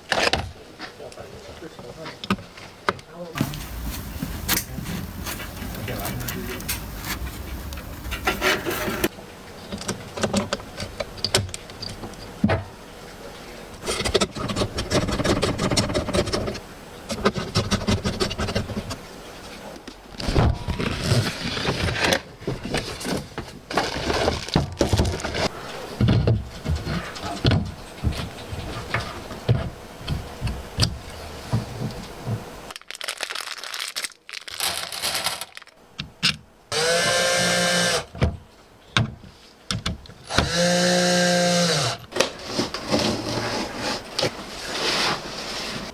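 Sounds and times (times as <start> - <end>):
clicks taps and rustling: 2.1 - 9.1
small motor whine: 3.4 - 9.1, 36.7 - 38.1, 40.3 - 42.1.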